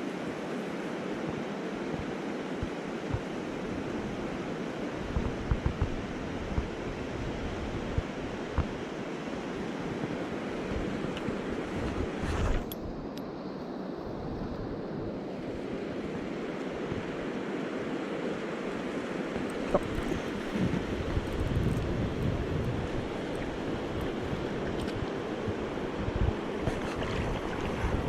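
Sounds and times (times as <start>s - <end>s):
mountain stream flowing: 15.4s - 28.0s.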